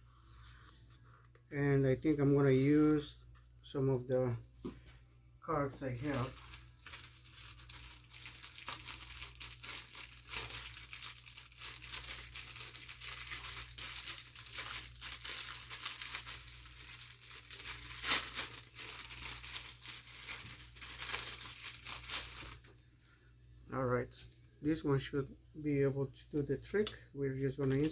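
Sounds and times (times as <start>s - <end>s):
plastic cards crackling and scraping: 5.8s - 22.7s, 27.6s - 27.9s.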